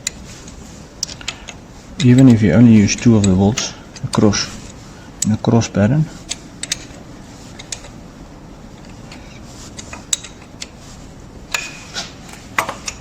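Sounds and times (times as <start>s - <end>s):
allen key clicking on bolts: 1.0s - 5.4s, 6.2s - 7.0s, 7.6s - 8.0s, 9.8s - 10.8s.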